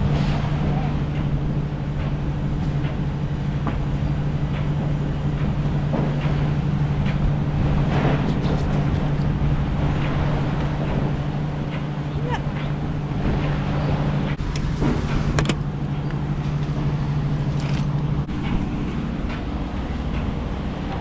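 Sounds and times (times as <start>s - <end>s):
road noise: 0.0s - 21.0s
truck engine drone: 0.0s - 21.0s.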